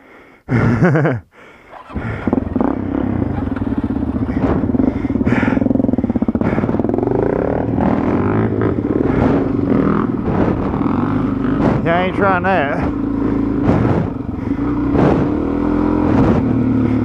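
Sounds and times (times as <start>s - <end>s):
motorcycle engine running: 1.7s - 17.0s
knocks and clatter: 9.1s - 12.2s, 13.6s - 14.2s.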